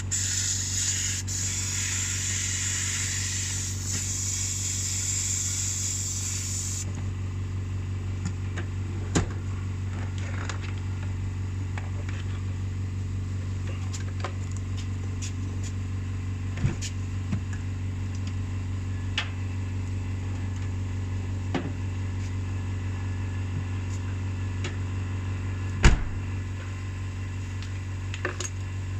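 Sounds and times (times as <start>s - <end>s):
high hiss: 0.1s - 6.8s.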